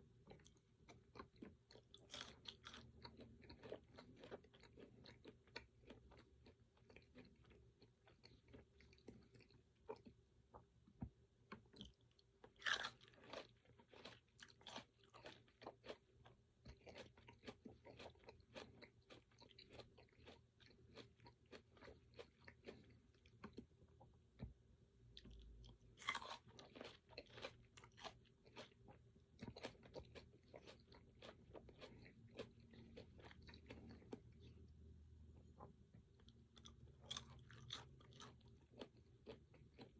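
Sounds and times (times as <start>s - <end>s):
chewing and crunching: 0.0s - 24.5s, 25.2s - 39.9s
crunchy bites: 12.6s - 16.0s, 26.0s - 28.8s, 36.2s - 39.9s.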